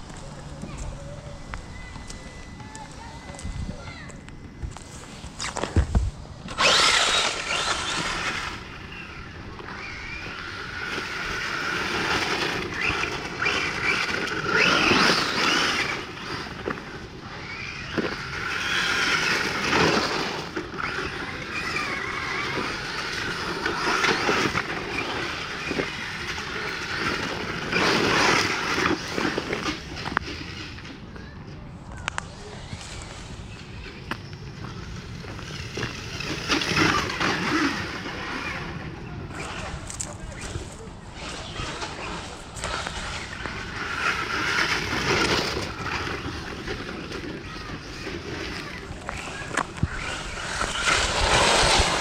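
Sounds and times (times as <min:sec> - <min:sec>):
continuous rolling noise: 0:00.0 - 0:52.0.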